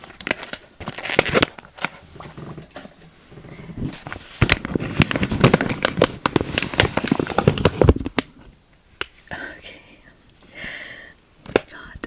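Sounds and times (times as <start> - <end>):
plastic packaging crinkling: 0.0 - 2.9, 3.9 - 8.4.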